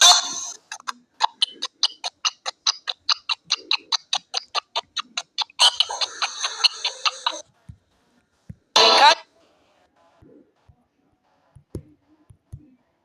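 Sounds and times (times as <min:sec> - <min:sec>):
rapid sharp clicks: 0:01.2 - 0:07.4.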